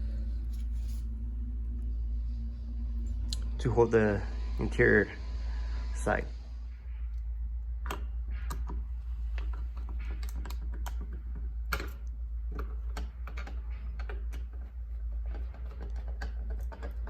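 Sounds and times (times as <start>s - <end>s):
steady low hum: 0.0s - 17.0s
screwdriver and metal clicks: 9.4s - 11.1s.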